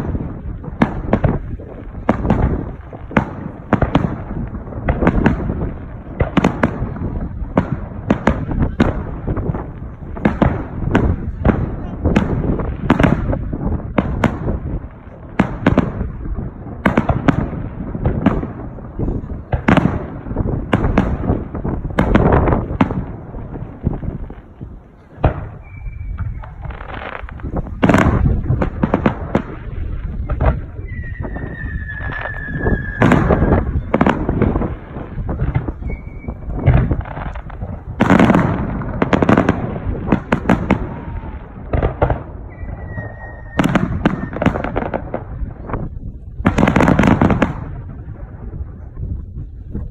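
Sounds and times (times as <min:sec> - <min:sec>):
fireworks bangs: 0:00.0 - 0:49.9
rumble of booms and echoes: 0:00.0 - 0:49.9
sharp crackling volleys: 0:00.0 - 0:49.9.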